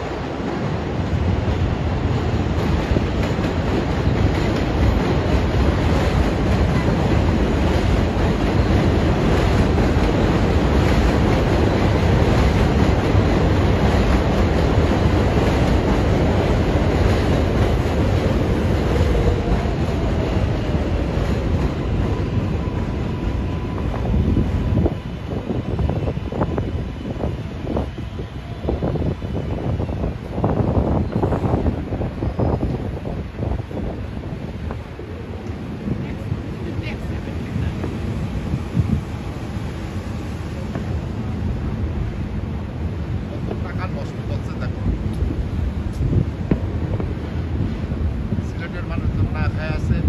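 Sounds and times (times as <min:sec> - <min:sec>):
train wheels rumbling on rails: 0:00.0 - 0:50.0.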